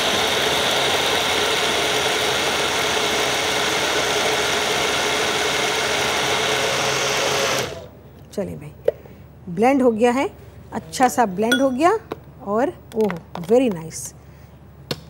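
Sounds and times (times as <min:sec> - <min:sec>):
electric blender motor whining: 0:00.0 - 0:07.9.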